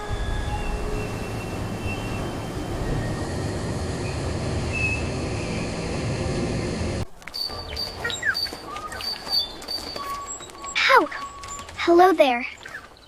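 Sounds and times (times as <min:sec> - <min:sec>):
birds chirping: 0:07.2 - 0:13.0.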